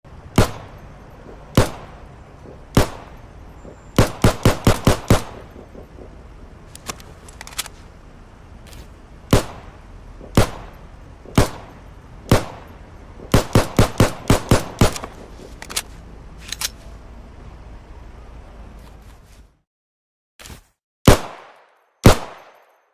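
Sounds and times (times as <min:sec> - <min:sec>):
pistol shots: 0:00.3 - 0:00.8, 0:01.5 - 0:02.0, 0:02.7 - 0:03.2, 0:04.0 - 0:05.9, 0:09.3 - 0:15.1, 0:21.1 - 0:22.8
sharp clicks: 0:00.4 - 0:07.8.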